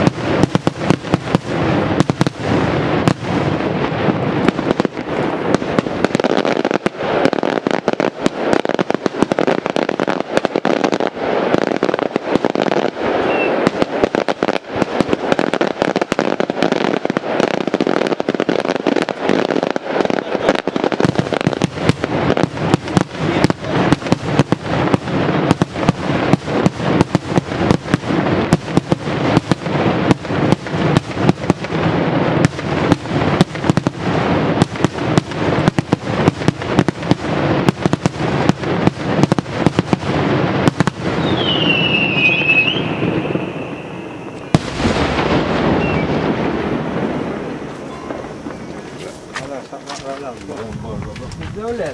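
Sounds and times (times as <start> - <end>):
firework shells bursting: 0.0 - 51.9.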